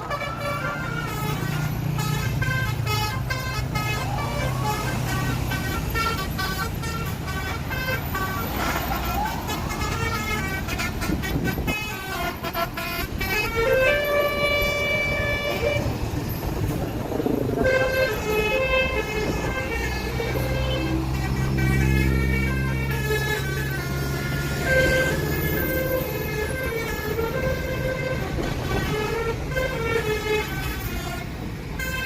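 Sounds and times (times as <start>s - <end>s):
melodic bus horns playing a tune: 0.0s - 32.0s
rising and falling siren: 3.8s - 5.4s, 8.6s - 10.4s.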